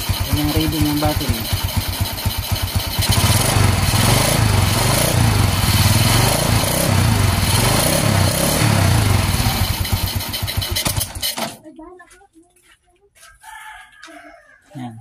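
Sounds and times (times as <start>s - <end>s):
motorcycle engine revving: 0.0s - 11.5s.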